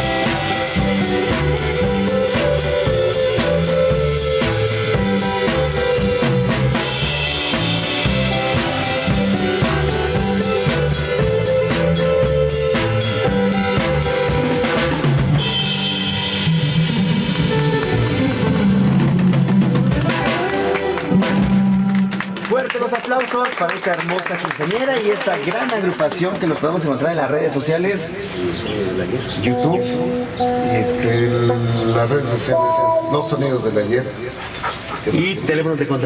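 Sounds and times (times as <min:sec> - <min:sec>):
repeating bass line: 0:00.0 - 0:20.1, 0:29.5 - 0:34.0
drum kit: 0:00.0 - 0:22.5
guitar: 0:00.0 - 0:22.5, 0:29.5 - 0:33.7.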